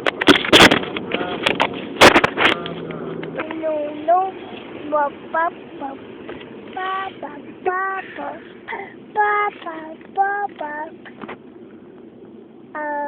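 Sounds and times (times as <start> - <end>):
child singing: 3.4 - 6.0, 6.7 - 8.5, 9.1 - 11.2, 12.7 - 13.0.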